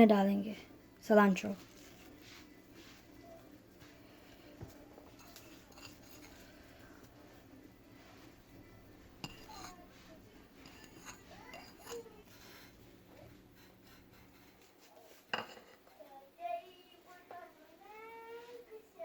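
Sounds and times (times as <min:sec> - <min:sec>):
spoon stirring in a bowl: 0:01.3 - 0:16.0
spoon clinking against bowl: 0:09.2 - 0:09.8, 0:10.6 - 0:12.1.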